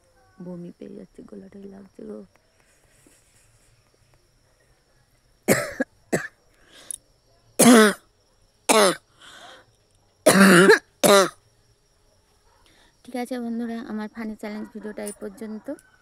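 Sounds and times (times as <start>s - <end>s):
woman coughing hard: 5.5s - 6.3s, 7.6s - 8.0s, 8.7s - 9.0s, 10.3s - 11.4s.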